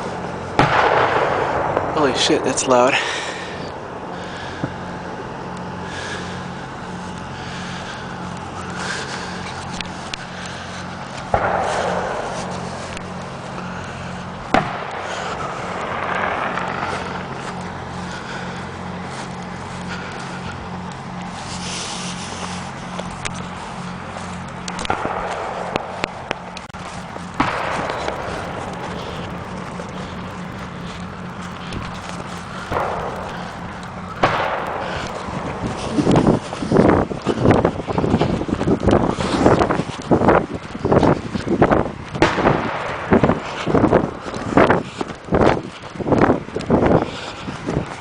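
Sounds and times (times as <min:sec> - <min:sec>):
fireworks crackling: 0:00.0 - 0:20.8, 0:21.4 - 0:47.5
firework bang: 0:00.6 - 0:03.3, 0:11.3 - 0:17.5, 0:26.8 - 0:36.6, 0:42.2 - 0:44.0
steady engine hum: 0:02.9 - 0:42.2.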